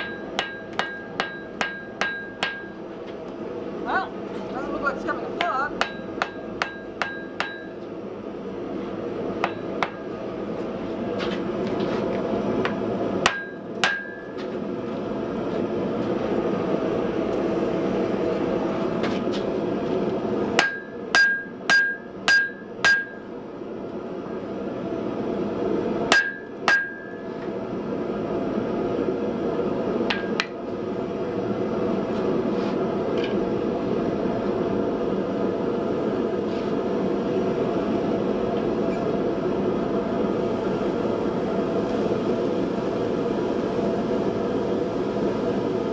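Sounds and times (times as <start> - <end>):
hammer striking iron on anvil: 0.0 - 2.8, 5.4 - 7.8, 9.4 - 10.2, 12.7 - 14.4, 20.6 - 23.3, 26.1 - 27.2, 30.1 - 30.5.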